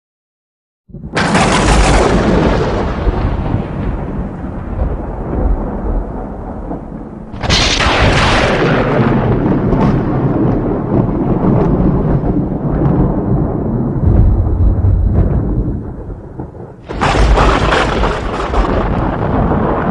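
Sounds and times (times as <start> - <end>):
sharp thunderclap: 0.9 - 19.9
thunder rumbling: 0.9 - 19.9
crackles: 5.9 - 13.0, 14.1 - 19.9.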